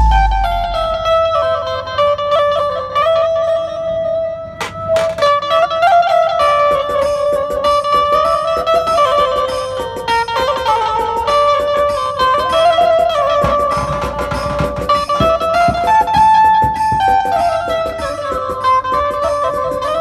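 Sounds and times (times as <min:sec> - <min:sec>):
heavy bass drum hits: 0:00.0 - 0:01.3
steady drumbeats: 0:00.0 - 0:01.4, 0:11.1 - 0:20.0
bright band lead melody: 0:00.0 - 0:01.5, 0:12.4 - 0:20.0.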